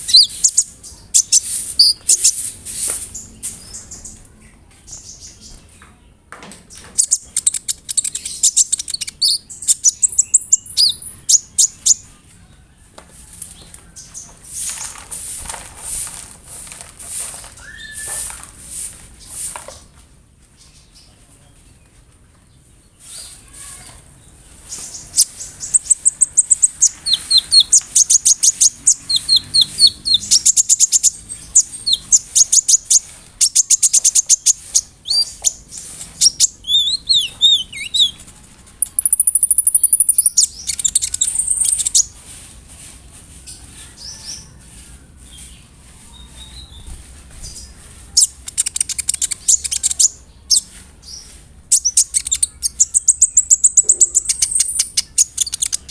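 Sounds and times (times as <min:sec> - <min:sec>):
sunbird singing trills: 0:00.0 - 0:02.5, 0:07.0 - 0:12.1, 0:17.6 - 0:18.4, 0:24.6 - 0:38.2, 0:38.8 - 0:42.2, 0:45.3 - 0:55.9.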